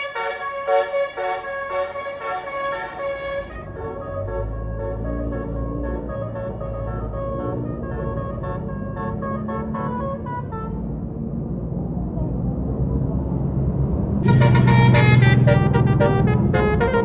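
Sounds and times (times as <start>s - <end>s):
multi-tone air horn melody: 0.0s - 10.8s, 14.2s - 17.0s
bus engine rising: 0.0s - 17.0s.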